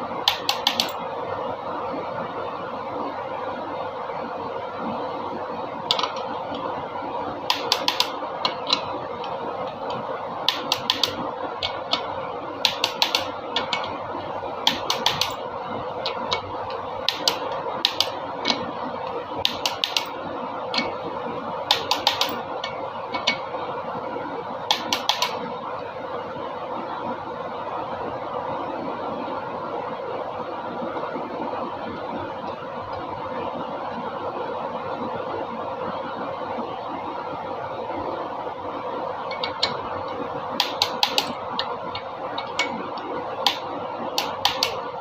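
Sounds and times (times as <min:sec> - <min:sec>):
steady hum: 0:00.0 - 0:45.0
hand tools clicking on metal: 0:07.5 - 0:14.0, 0:14.7 - 0:15.4, 0:19.4 - 0:20.1, 0:21.7 - 0:23.4, 0:39.3 - 0:39.8, 0:44.2 - 0:44.8.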